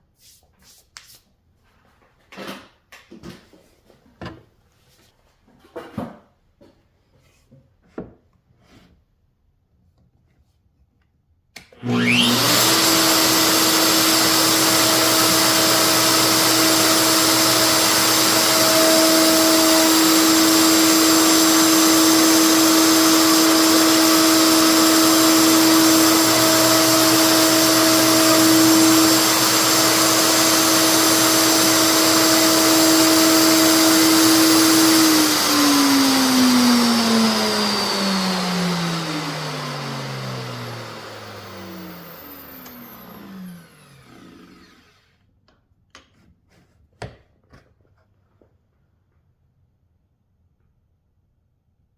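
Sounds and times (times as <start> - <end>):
electric router whining: 11.8 - 45.2.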